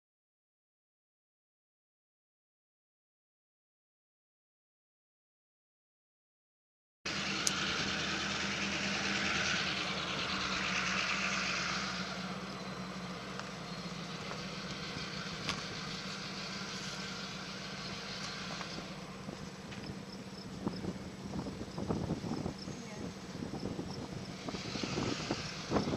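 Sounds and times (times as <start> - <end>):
low engine hum: 7.1 - 25.9
train wheels rushing on rail: 7.1 - 25.9
sharp clicks: 7.4 - 7.7.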